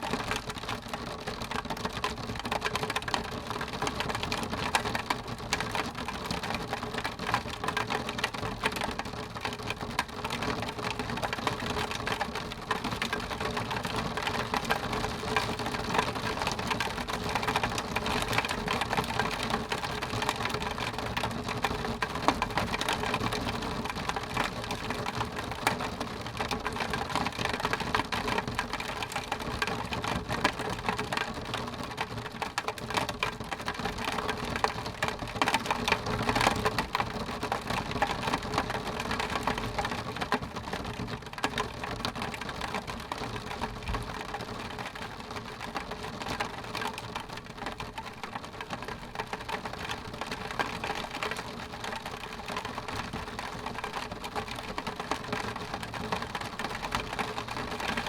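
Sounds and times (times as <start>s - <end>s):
rain on window glass: 0.0s - 58.0s.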